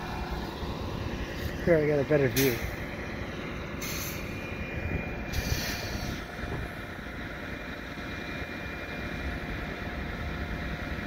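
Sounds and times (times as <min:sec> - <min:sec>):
low outdoor rumble: 0:00.0 - 0:11.0
brief hiss: 0:05.3 - 0:06.2.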